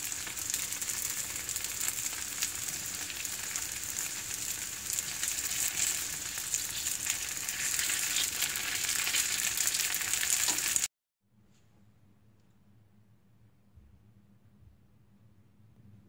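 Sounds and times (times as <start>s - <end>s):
food sizzling in a pan: 0.0s - 10.9s
faint low hum: 11.3s - 16.0s.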